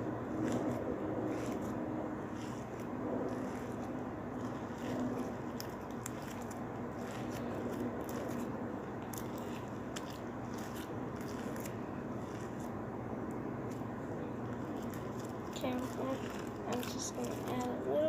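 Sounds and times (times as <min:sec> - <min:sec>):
low background hum: 0:00.0 - 0:18.0
slime crackling and popping: 0:03.3 - 0:12.7, 0:14.4 - 0:17.8.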